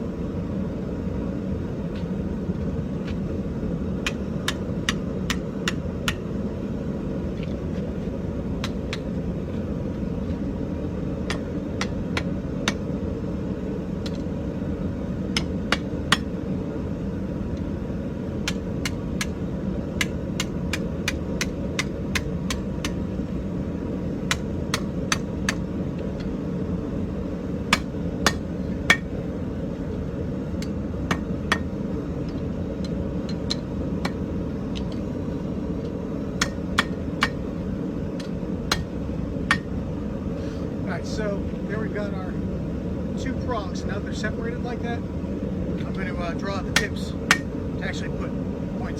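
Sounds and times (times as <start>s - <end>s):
hammer striking hot iron on anvil: 4.0s - 6.3s, 8.6s - 9.1s, 11.2s - 12.9s, 15.3s - 16.4s, 18.4s - 23.1s, 24.3s - 25.7s, 27.7s - 29.2s, 30.6s - 35.0s, 36.4s - 37.5s, 38.2s - 39.8s, 46.7s - 47.6s.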